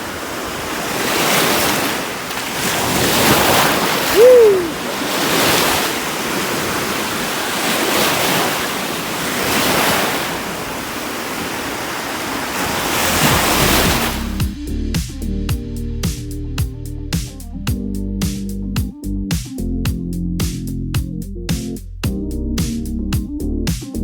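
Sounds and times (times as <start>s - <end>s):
surf waves breaking: 0.0s - 14.4s
wind on microphone: 0.0s - 14.7s
music: 13.4s - 24.0s.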